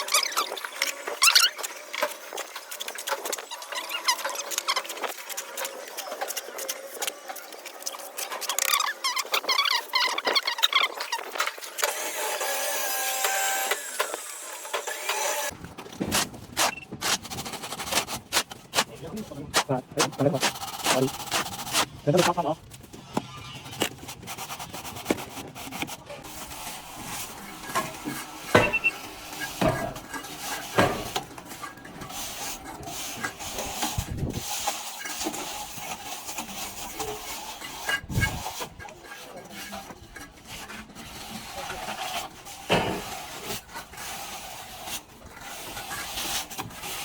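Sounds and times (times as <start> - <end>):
trowel scraping plaster: 15.0 - 47.0.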